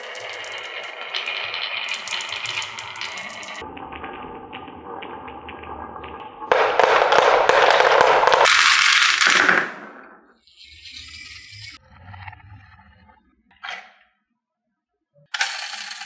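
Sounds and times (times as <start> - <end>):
marbles clattering on wooden run: 6.5 - 10.1, 15.4 - 16.0.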